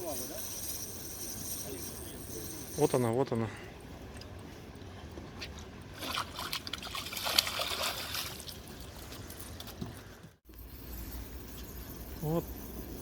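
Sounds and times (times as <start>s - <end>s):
fish thrashing in water: 6.0s - 9.0s.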